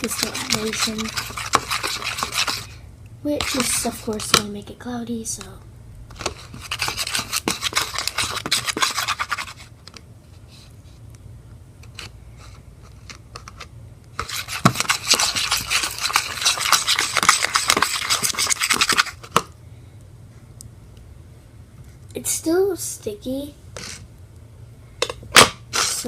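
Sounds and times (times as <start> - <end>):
utensil scraping round a bowl: 0.0 - 2.8, 3.4 - 4.4, 6.2 - 9.7, 14.2 - 19.3.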